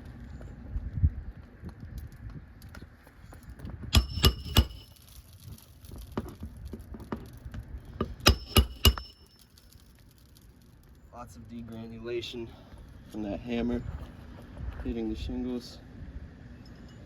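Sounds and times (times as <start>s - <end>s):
hammer striking metal tool: 4.0s - 5.0s, 8.0s - 9.4s.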